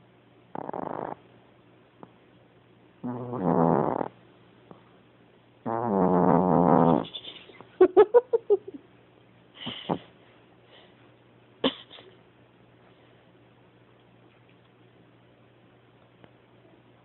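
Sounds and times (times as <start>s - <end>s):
pet snoring: 0.5s - 1.2s, 3.0s - 4.2s, 5.6s - 7.1s.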